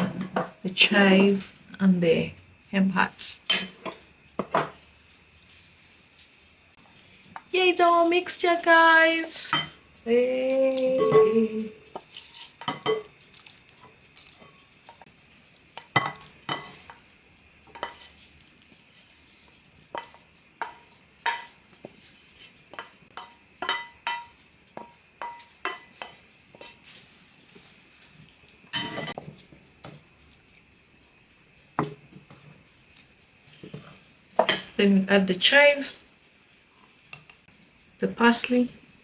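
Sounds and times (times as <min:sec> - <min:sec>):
utensil scraping cookware: 0:11.9 - 0:13.2, 0:15.8 - 0:17.1, 0:17.7 - 0:27.0.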